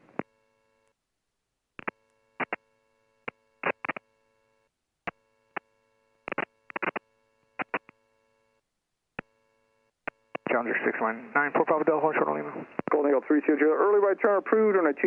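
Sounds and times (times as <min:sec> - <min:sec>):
radio bursts and clicks: 0:01.8 - 0:04.1, 0:05.1 - 0:08.0, 0:10.0 - 0:15.0.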